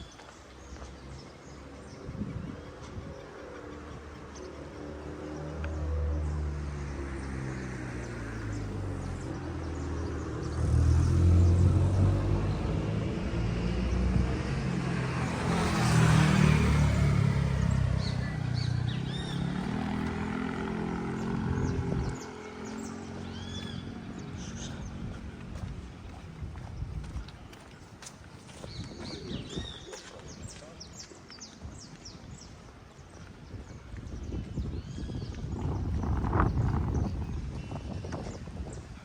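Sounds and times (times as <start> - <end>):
vehicle engine driving past: 3.6 - 26.2.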